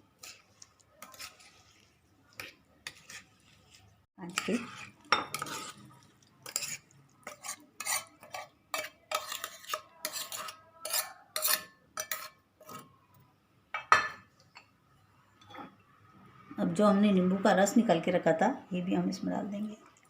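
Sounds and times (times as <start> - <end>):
spoon scraping in a bowl: 0.0 - 12.9.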